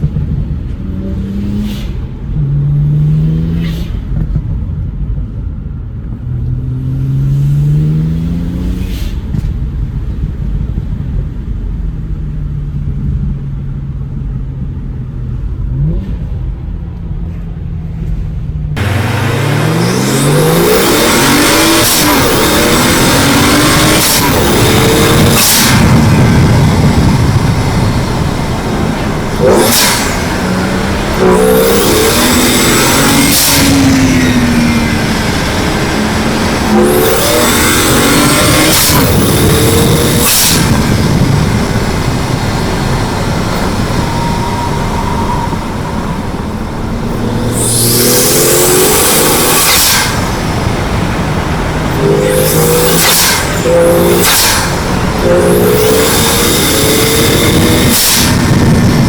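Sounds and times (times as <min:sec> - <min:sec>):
car engine accelerating: 0:00.0 - 0:59.0
loud turbo hissing: 0:18.8 - 0:59.0.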